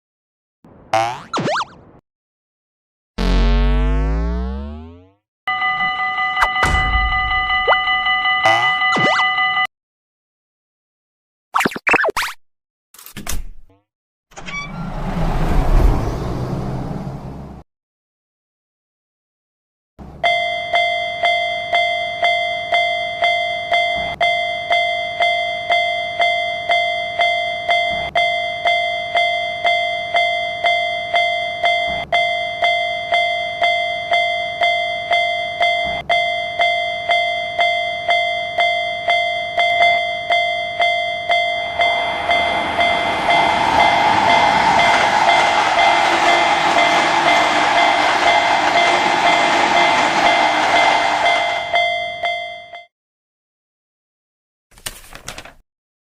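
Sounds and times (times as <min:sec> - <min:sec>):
railroad crossing alarm ringing: 0:05.5 - 0:09.7, 0:20.2 - 0:52.9
train passing: 0:14.8 - 0:17.6, 0:40.9 - 0:52.4.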